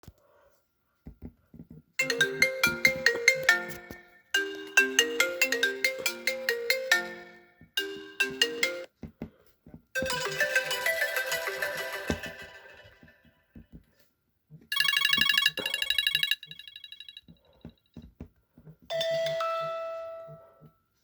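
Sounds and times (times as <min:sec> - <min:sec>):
dense ringtone: 0:02.0 - 0:08.9, 0:10.0 - 0:13.3, 0:14.7 - 0:17.3
plucked ringtone melody: 0:02.0 - 0:08.9, 0:10.0 - 0:13.3, 0:14.7 - 0:17.2, 0:18.9 - 0:20.5.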